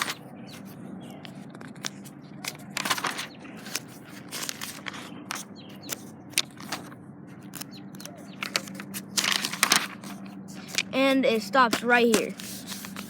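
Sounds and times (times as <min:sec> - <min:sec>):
book pages turning: 0:00.0 - 0:13.0
stuck paper pages peeled apart: 0:01.8 - 0:06.9, 0:08.4 - 0:10.9.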